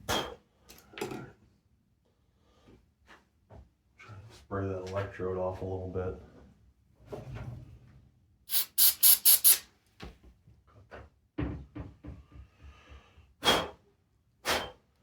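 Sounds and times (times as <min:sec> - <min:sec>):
aerosol spray hissing: 0:08.5 - 0:09.6
can and plug clicking: 0:08.5 - 0:09.6.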